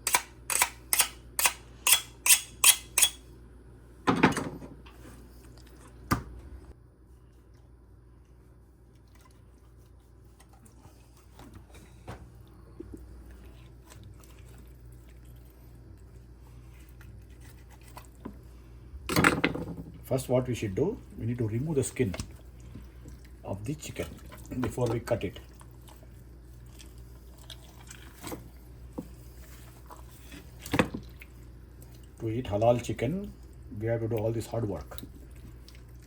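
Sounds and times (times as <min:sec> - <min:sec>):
knife scraping on sharpener: 0:00.1 - 0:03.2.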